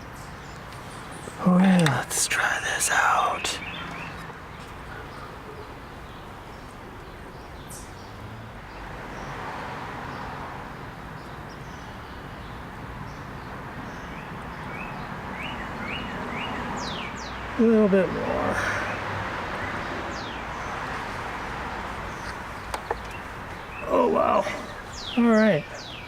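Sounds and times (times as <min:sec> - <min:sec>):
steady background hiss: 0:00.0 - 0:08.8.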